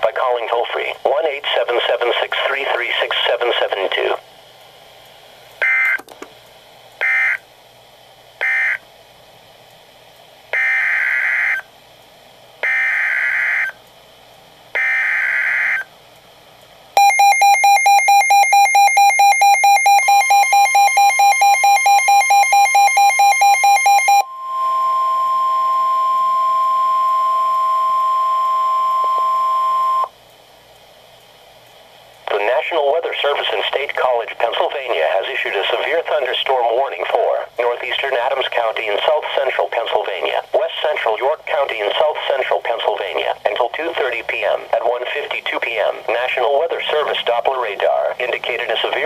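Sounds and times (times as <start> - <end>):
fast alarm beeping: 5.6 - 6.0, 7.0 - 7.4, 8.4 - 8.8, 10.6 - 11.7, 12.6 - 13.8, 14.8 - 15.9, 17.0 - 30.1
high-pitched warning alarm tone: 7.0 - 7.4, 8.4 - 8.8, 10.6 - 11.7, 12.6 - 13.8, 14.8 - 15.9, 17.0 - 30.1.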